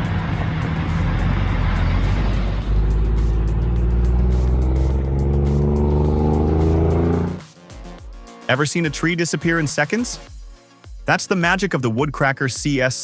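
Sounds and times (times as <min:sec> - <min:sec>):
vehicle engine running: 0:00.0 - 0:07.4
background music: 0:00.0 - 0:13.0.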